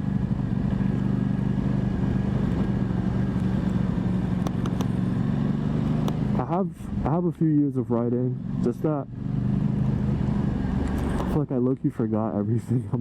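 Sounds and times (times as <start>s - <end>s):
low wind rumble: 0.0s - 7.3s
motorcycle engine running: 0.0s - 12.2s.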